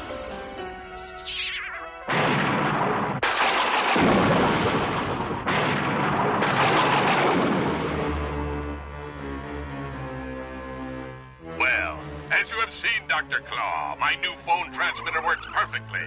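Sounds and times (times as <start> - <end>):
cartoon explosion blasts: 1.0 - 8.2.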